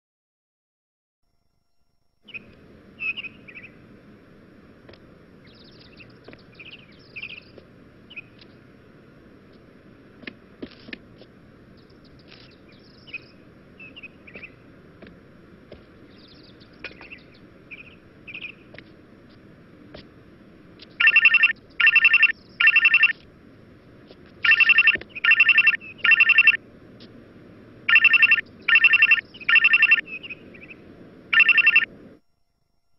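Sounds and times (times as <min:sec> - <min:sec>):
low hiss: 0:01.3 - 0:32.9
electronic phone ringing: 0:21.0 - 0:23.2, 0:24.4 - 0:26.6, 0:27.9 - 0:30.1, 0:31.3 - 0:31.9.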